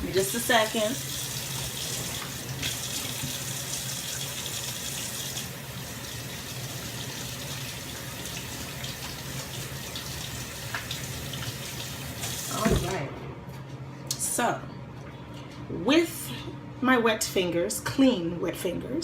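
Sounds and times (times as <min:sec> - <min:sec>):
tap water running into sink: 0:00.2 - 0:12.9.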